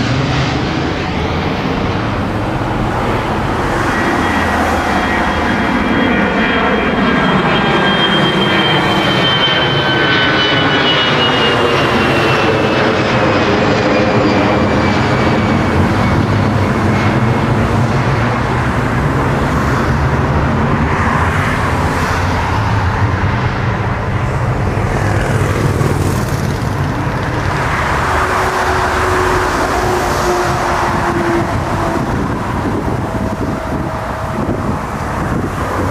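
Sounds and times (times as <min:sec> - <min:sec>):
high whine falling in pitch: 0:00.0 - 0:13.9
airplane engines running: 0:00.0 - 0:35.9.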